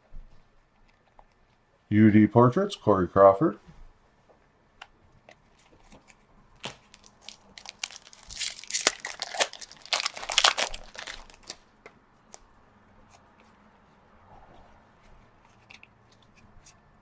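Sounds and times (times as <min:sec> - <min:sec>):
foil wrapper crinkling and tearing: 0:06.6 - 0:11.6.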